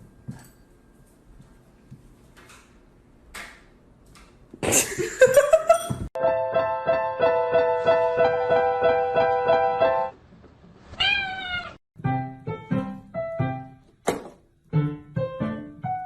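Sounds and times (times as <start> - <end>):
piano music: 6.2 - 10.2, 12.0 - 14.0, 14.6 - 16.0
cat meowing: 10.9 - 11.8.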